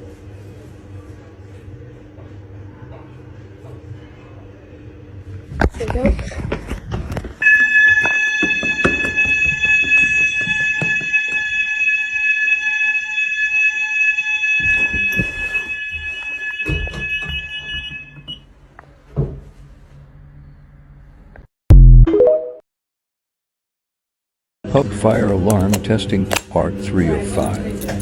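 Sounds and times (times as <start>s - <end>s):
fire alarm tone: 7.4s - 18.5s.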